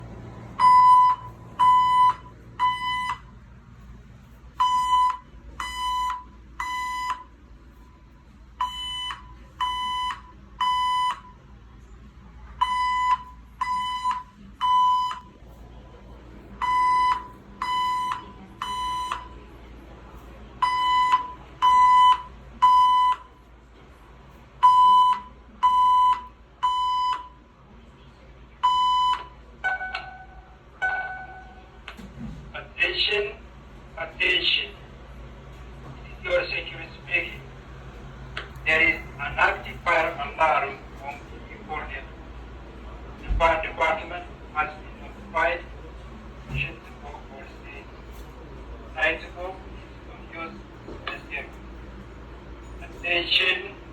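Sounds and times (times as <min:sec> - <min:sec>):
fire alarm beeping: 0:00.5 - 0:03.5, 0:04.5 - 0:11.6, 0:12.6 - 0:15.5, 0:16.5 - 0:19.5, 0:20.5 - 0:23.5, 0:24.6 - 0:27.5, 0:28.6 - 0:31.8.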